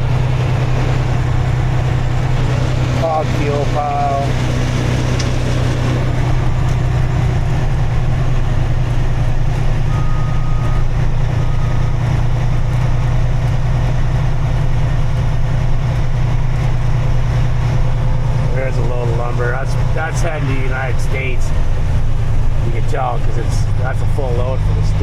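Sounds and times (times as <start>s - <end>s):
low engine drone: 0.0s - 25.0s
short high beeps: 9.9s - 12.0s.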